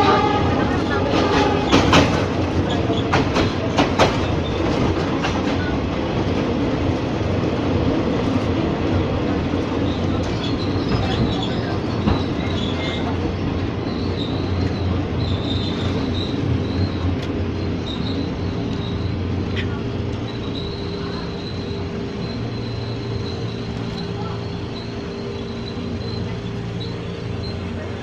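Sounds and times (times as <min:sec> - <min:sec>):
rail-joint clicks: 0:00.0 - 0:06.5, 0:09.5 - 0:28.0
wheels rumbling on rail: 0:00.0 - 0:28.0
faint high wheel squeal: 0:09.8 - 0:28.0.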